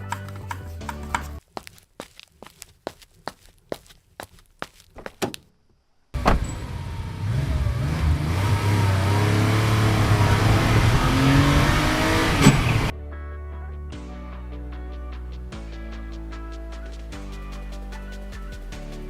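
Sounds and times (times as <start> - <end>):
car engine starting and revving: 6.2 - 12.9.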